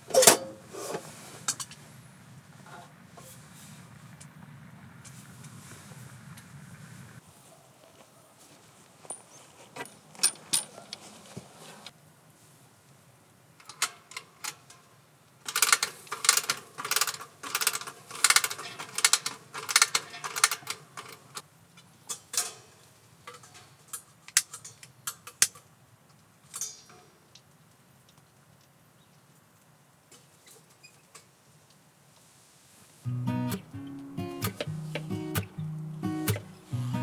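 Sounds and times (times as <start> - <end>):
sharp clicks and taps: 33.1 - 37.0.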